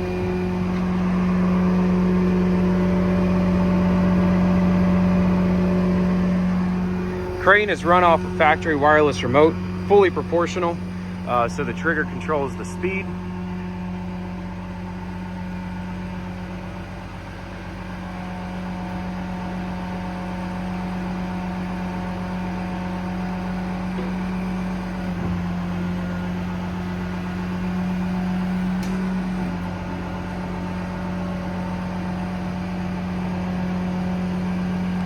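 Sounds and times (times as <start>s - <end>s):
diesel engine humming: 0.0s - 35.0s.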